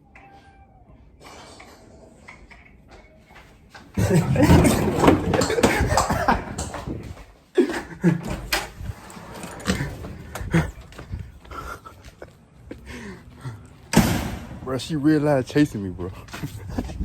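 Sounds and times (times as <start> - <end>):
knocks and bumps: 3.8 - 11.7.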